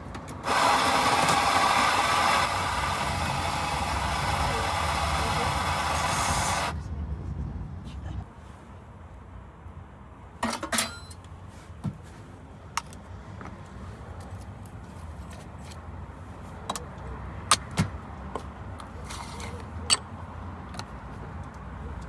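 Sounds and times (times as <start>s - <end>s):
clinks of coffee gear: 10.5s - 11.2s.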